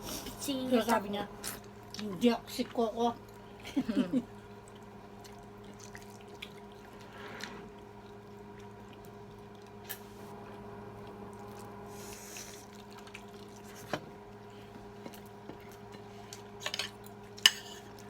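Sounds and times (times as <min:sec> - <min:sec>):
low electrical hum: 0:00.0 - 0:18.0
soft chewing: 0:04.4 - 0:18.0.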